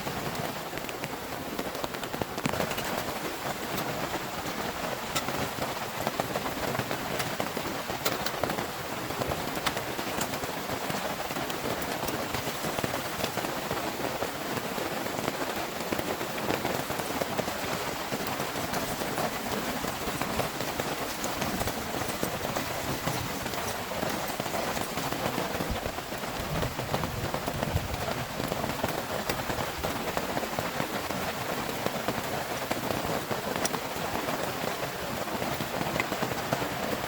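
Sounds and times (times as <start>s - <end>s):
raindrop hits: 0.8s - 31.1s
heavy rain hissing: 8.5s - 31.6s.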